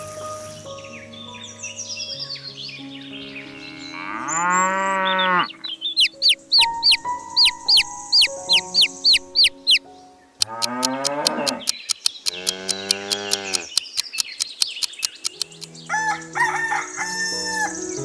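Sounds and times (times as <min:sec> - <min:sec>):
clucking calls: 0:06.0 - 0:09.8, 0:10.4 - 0:15.7
music with fast ticking beat: 0:06.1 - 0:07.6, 0:10.4 - 0:15.7.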